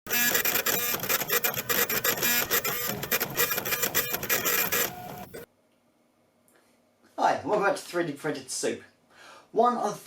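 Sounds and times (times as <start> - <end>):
printer stepper motors buzzing: 0.1 - 5.5.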